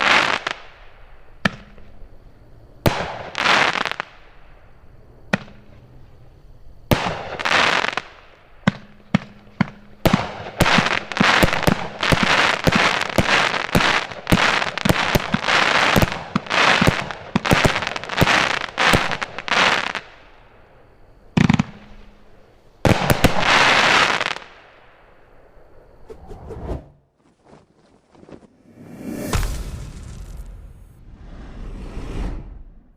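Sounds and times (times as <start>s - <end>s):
firework crackling: 0.0s - 1.0s, 10.0s - 20.4s, 22.9s - 24.6s, 28.6s - 32.9s
firework launch bangs: 28.7s - 32.9s.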